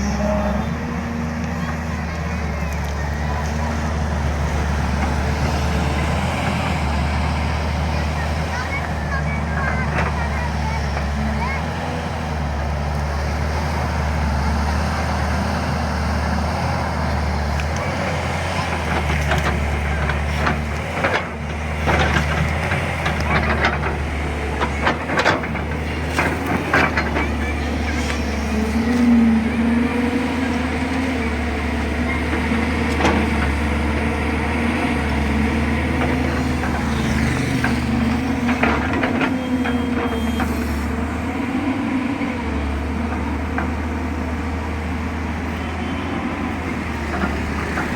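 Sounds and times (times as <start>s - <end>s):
excavator diesel engine running: 0.0s - 47.9s
sharp clanks and knocks: 18.6s - 29.2s, 35.1s - 41.1s.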